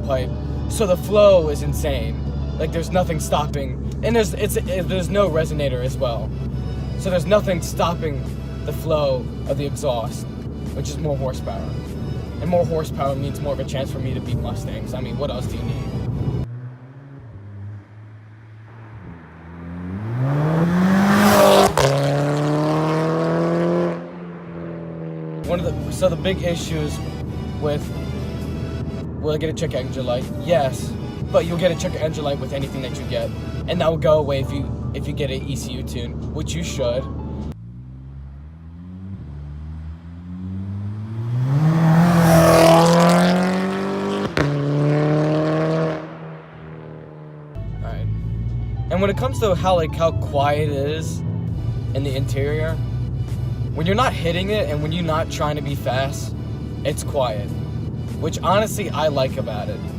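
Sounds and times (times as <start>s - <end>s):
car engine accelerating: 0.0s - 59.9s
car engine revving hard: 18.1s - 25.6s, 37.6s - 47.5s
exhaust crack: 37.5s - 47.6s.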